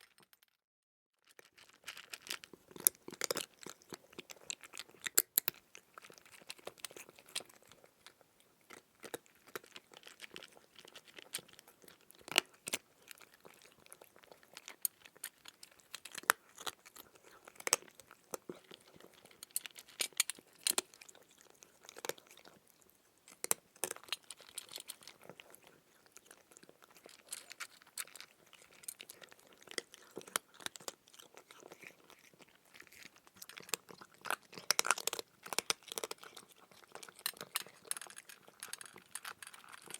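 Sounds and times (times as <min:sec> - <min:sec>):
crunchy food chewing: 0:01.2 - 0:39.9.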